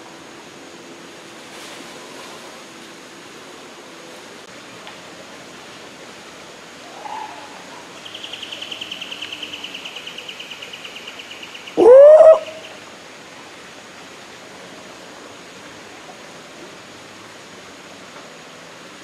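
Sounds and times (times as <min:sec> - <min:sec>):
steady background hiss: 0:00.0 - 0:19.0
birds calling: 0:06.9 - 0:12.8.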